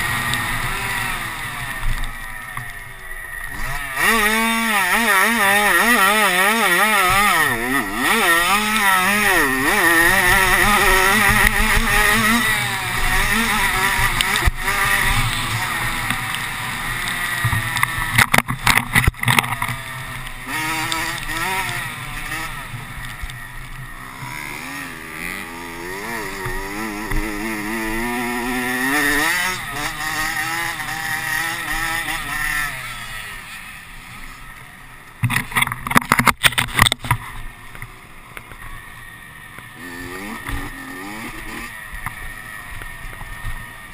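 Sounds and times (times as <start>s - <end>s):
racing engine revving: 0.0s - 2.0s, 3.5s - 23.2s, 24.0s - 33.8s, 39.8s - 42.0s.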